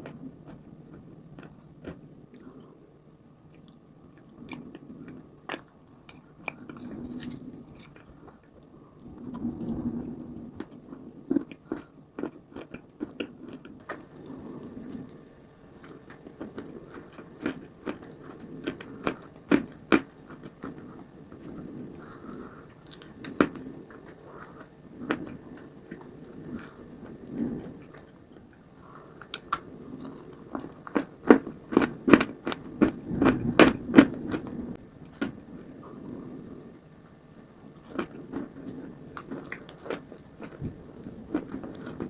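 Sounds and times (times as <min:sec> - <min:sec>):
chewing clay crunches: 0:10.6 - 0:15.2, 0:15.8 - 0:34.5, 0:37.7 - 0:42.0.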